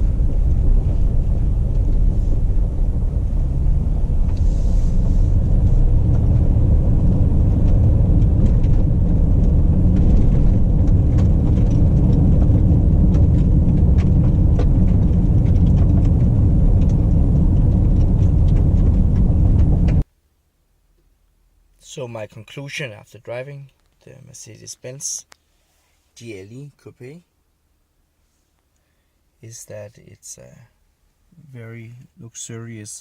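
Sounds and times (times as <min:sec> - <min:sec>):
car driving low rumble: 0:00.0 - 0:20.1.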